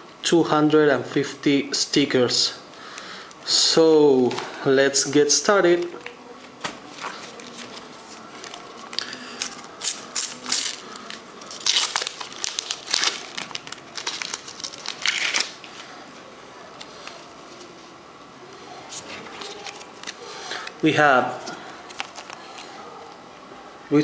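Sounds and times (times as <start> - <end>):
paper wrapper tearing and crinkling: 6.9 - 15.7, 19.3 - 20.2.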